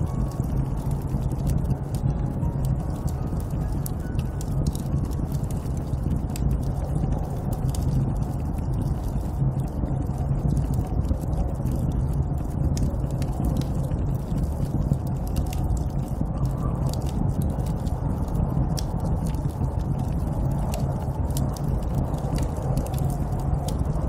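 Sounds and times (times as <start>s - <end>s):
snowstorm wind rumbling: 0.0s - 24.0s
small sharp crackles: 18.8s - 24.0s.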